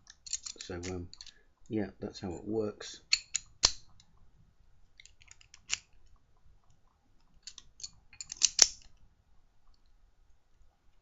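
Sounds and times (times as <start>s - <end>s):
padlock clicking and rattling: 0.1s - 1.4s, 3.1s - 4.1s, 5.0s - 6.0s, 7.4s - 8.9s.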